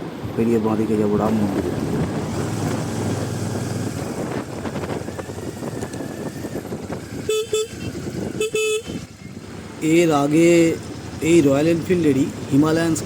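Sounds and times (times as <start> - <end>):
motorcycle riding noise: 0.0 - 13.0
horn beeps: 7.2 - 9.1.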